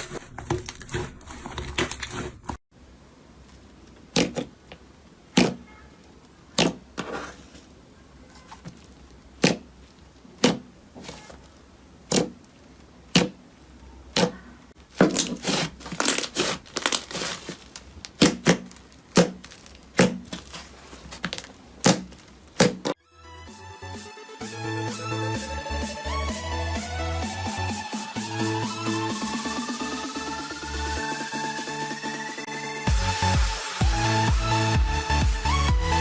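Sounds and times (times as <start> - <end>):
slime popping and crackling: 14.1 - 22.9.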